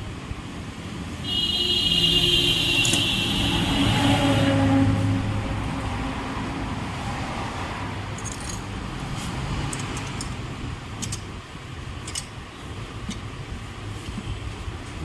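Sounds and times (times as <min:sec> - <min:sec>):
metallic clinks and jingles: 0:08.1 - 0:08.7.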